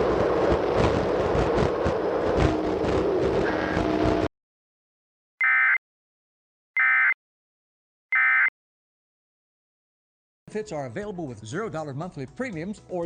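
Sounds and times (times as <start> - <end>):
loud distorted sound: 0.0 - 4.3
harsh buzzing data tones: 2.4 - 4.3.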